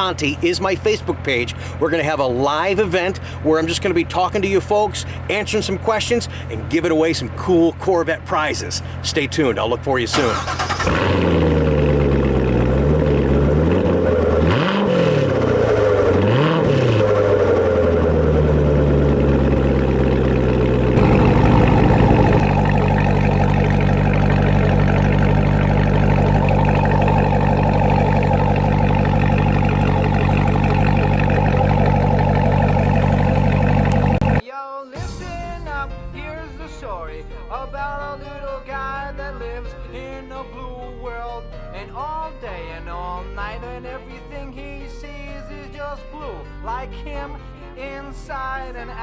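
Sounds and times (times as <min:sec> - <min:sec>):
car engine idling: 0:00.0 - 0:34.4
car engine revving: 0:00.0 - 0:34.4.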